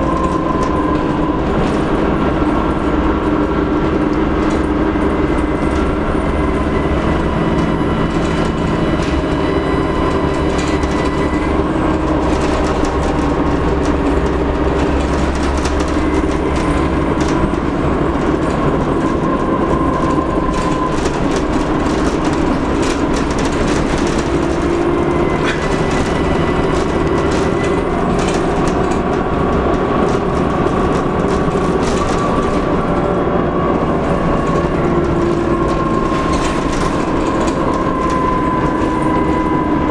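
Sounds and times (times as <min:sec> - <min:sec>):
bus diesel engine running: 0:00.0 - 0:39.9
steady drone: 0:00.0 - 0:39.9.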